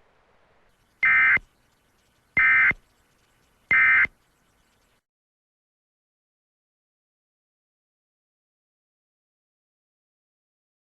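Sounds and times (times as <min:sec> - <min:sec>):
warbling two-tone data bursts: 0:01.0 - 0:05.0.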